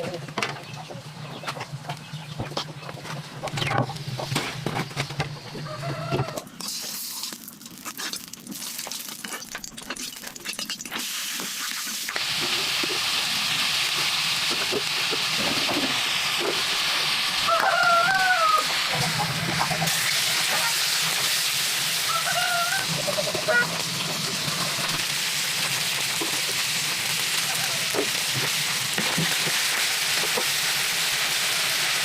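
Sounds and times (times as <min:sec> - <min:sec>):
chickens clucking: 0:00.0 - 0:06.5, 0:17.4 - 0:19.9, 0:22.1 - 0:23.8
steady sizzling hiss: 0:06.5 - 0:32.0.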